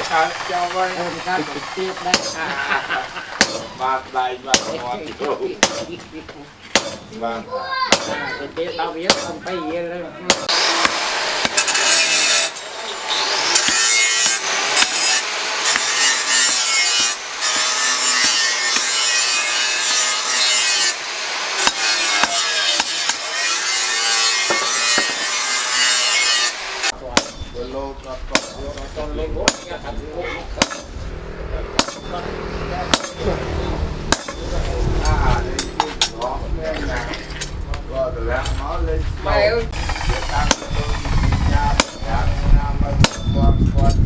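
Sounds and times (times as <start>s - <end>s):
tool grinding with rasping noise: 0.0s - 5.0s, 10.3s - 27.7s, 39.7s - 44.0s
sharp knocks: 6.7s - 7.1s.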